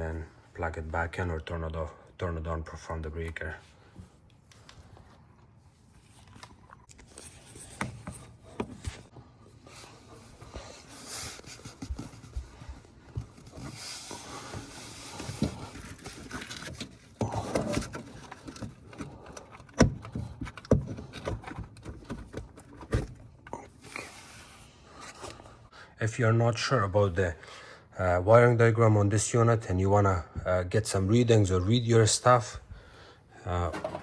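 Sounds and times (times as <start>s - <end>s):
tools scraping and knocking: 33.7s - 34.0s.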